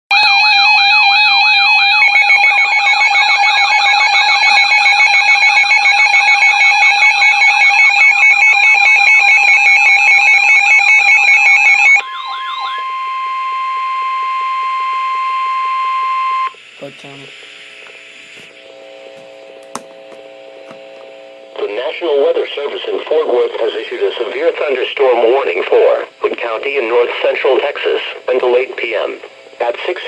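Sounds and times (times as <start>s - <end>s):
sirens wailing: 0.1s - 16.5s.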